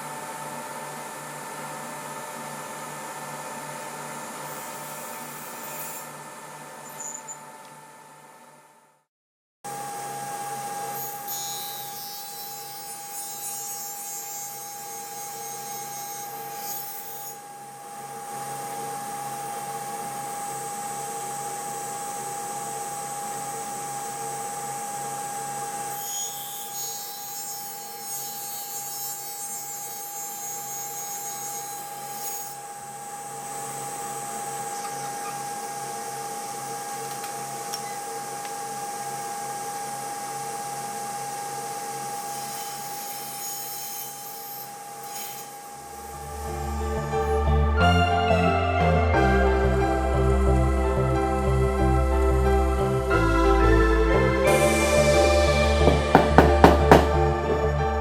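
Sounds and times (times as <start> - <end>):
power tool motor whining: 30.5 - 47.2.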